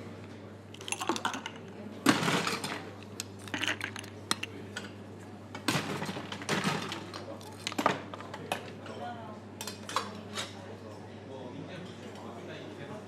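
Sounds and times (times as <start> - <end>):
glassware and ice clinking: 0.8 - 1.7
faint pub chatter: 7.0 - 13.0.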